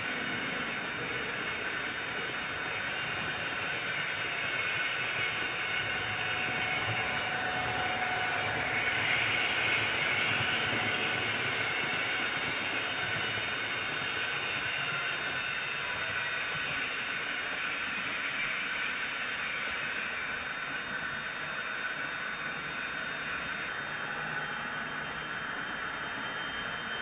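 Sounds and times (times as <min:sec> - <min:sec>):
model train wheels on rails: 0:00.0 - 0:27.0
electric motor whine: 0:00.4 - 0:16.9.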